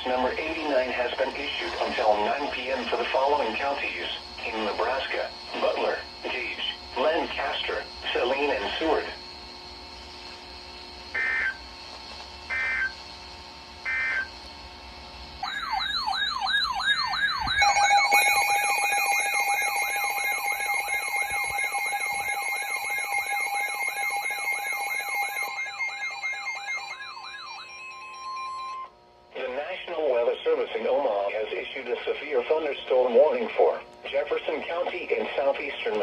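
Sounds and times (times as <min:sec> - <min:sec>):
short data bursts: 0:13.8 - 0:14.4, 0:17.2 - 0:28.9
warbling alert tone: 0:15.4 - 0:28.9
two-tone attention signal: 0:17.3 - 0:28.9.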